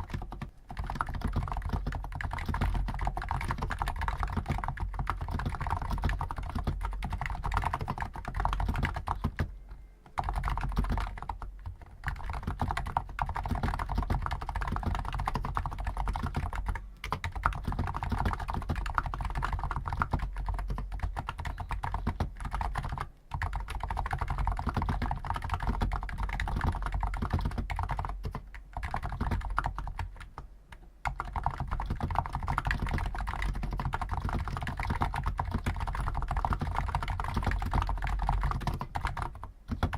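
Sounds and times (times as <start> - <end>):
fast typing on keyboard: 0.0 - 9.5, 10.2 - 30.4, 31.0 - 39.9.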